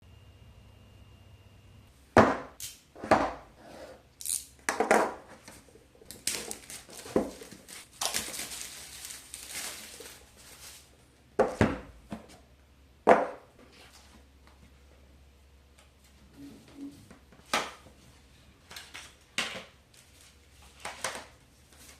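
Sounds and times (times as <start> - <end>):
packaging rustling and scraping: 5.3 - 11.0.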